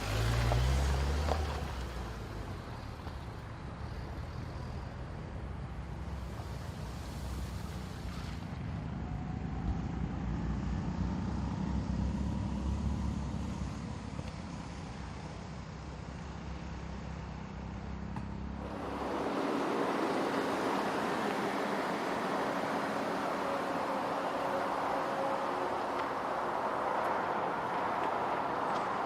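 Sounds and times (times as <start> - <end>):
car engine rumble with whine: 0.0 - 29.0
steady rushing hiss: 18.6 - 29.0.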